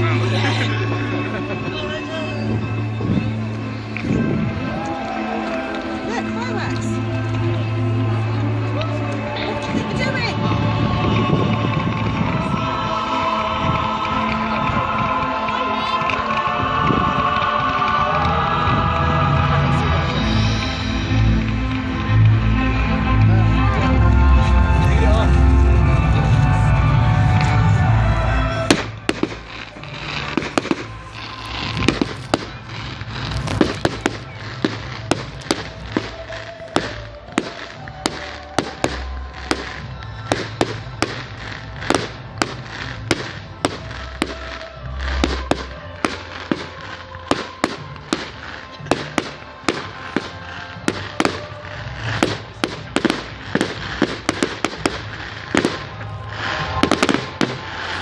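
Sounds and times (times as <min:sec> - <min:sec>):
fireworks bangs and cracks: 0:09.6 - 0:22.4, 0:27.0 - 0:58.0.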